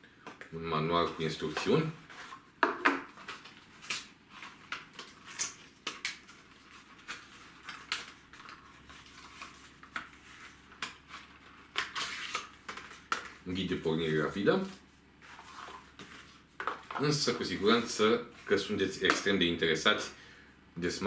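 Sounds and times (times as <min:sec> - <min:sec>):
paper and cardboard handling clicks: 0:01.4 - 0:13.4.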